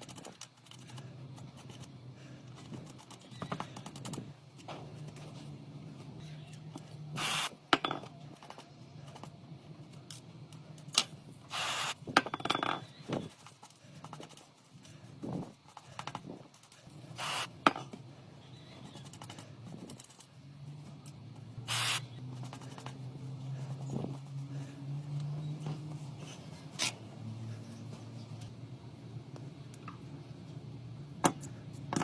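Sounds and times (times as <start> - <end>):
short hissing or scraping bursts: 7.2 - 7.6, 11.5 - 12.0, 17.1 - 17.6, 21.6 - 22.2.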